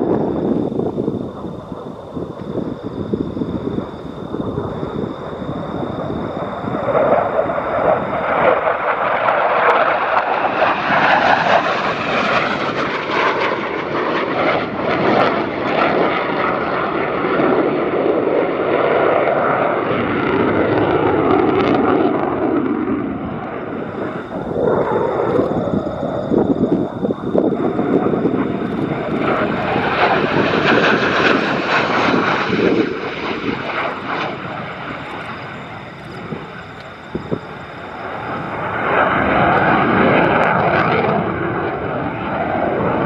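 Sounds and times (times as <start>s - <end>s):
jet engine roar: 0.0s - 43.0s.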